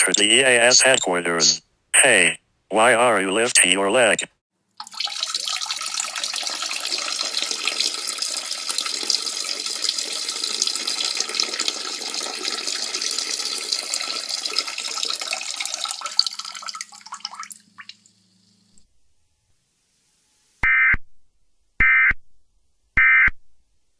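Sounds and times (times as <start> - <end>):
stream of liquid splashing: 4.7 - 18.2
liquid dripping: 4.7 - 18.8.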